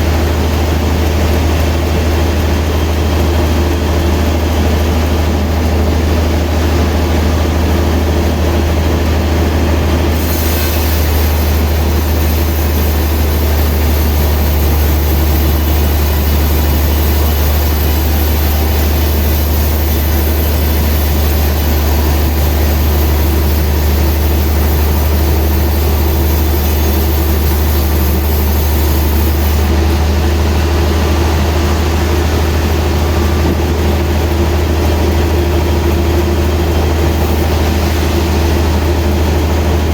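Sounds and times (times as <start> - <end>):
sawmill machinery humming: 0.0 - 39.9
high hiss: 10.1 - 29.8.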